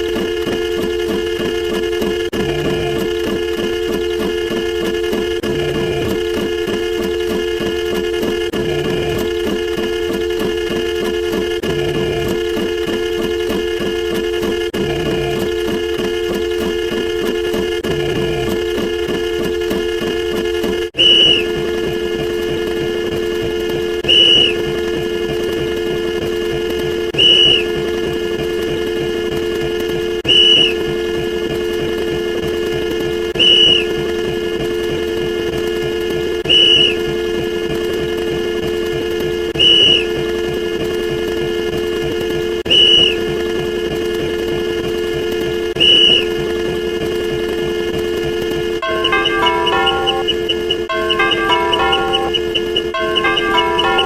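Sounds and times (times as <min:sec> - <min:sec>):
whistle-like drone: 0:21.0 - 0:29.0, 0:29.6 - 0:31.9, 0:33.2 - 0:34.8, 0:36.4 - 0:38.8, 0:39.5 - 0:40.5, 0:42.6 - 0:43.6, 0:45.7 - 0:46.8, 0:48.8 - 0:54.0
short high tone: 0:48.8 - 0:54.0.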